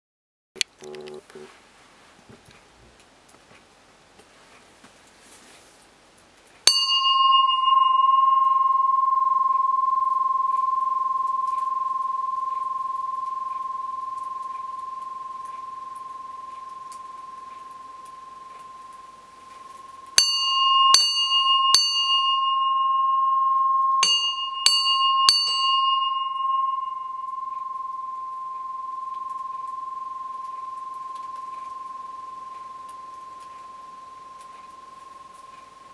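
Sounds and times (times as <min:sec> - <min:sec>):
bronze bell ringing: 0:06.7 - 0:35.3.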